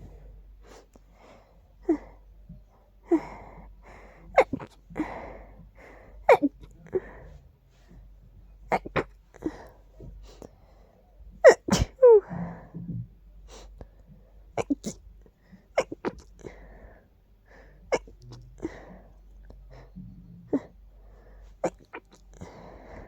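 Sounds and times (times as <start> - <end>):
person sneezing: 6.3 - 6.6, 11.4 - 12.2.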